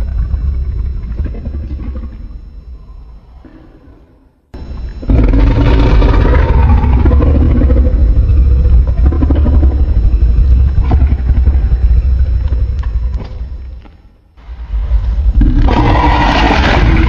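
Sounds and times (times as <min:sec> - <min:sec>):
crackles: 0:00.0 - 0:17.0
deep monster rumbling: 0:03.2 - 0:13.7, 0:14.4 - 0:17.0.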